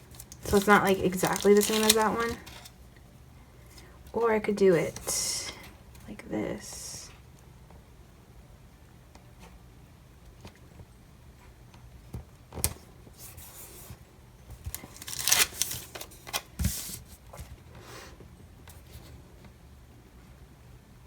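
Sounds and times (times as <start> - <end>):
paper sticker sheets rustling: 0.0 - 2.8, 13.2 - 17.1.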